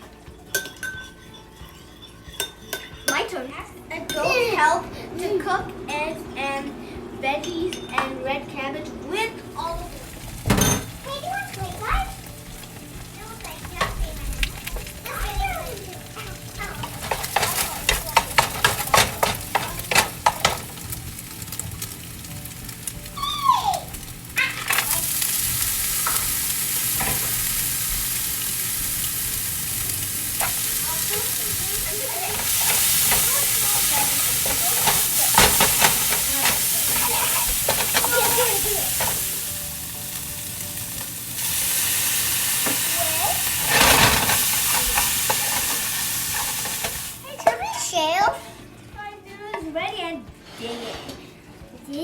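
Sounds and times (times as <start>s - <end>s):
spatula scraping a pan: 0.6s - 3.3s, 9.6s - 22.0s, 24.5s - 39.6s, 41.0s - 47.2s, 50.4s - 51.3s
food sizzling in oil: 9.1s - 48.6s
stirring clicks: 9.6s - 39.6s, 42.6s - 47.2s.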